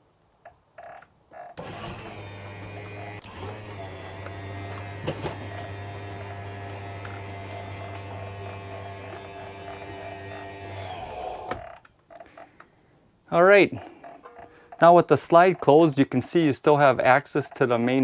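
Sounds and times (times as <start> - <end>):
electric motor humming: 1.6 - 11.6.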